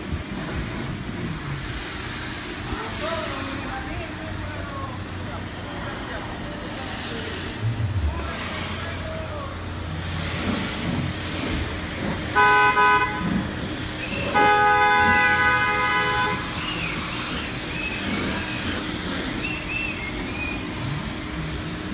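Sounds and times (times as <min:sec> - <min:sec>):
road and engine noise: 0:00.0 - 0:21.9
vehicle horn honking: 0:12.3 - 0:13.5, 0:14.1 - 0:16.6.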